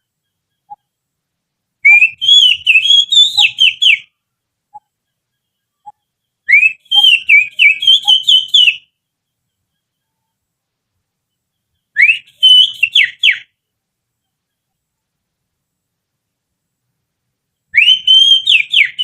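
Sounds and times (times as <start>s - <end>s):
person whistling bird song: 1.8s - 4.1s, 6.5s - 8.9s, 12.0s - 13.5s, 17.8s - 19.0s.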